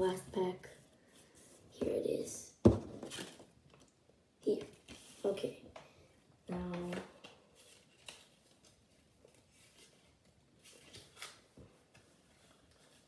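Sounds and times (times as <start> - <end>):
cards rustling and clicking: 6.6 - 13.0.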